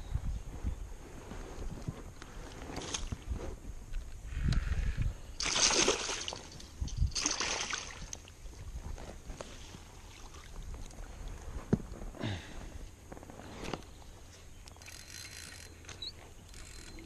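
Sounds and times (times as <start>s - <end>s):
water splashing and sloshing: 5.4s - 8.4s, 9.5s - 10.9s.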